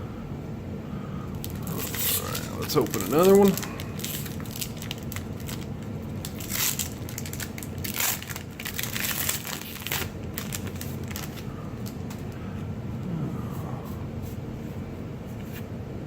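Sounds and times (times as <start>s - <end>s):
foil wrapper tearing and crinkling: 1.4s - 12.3s.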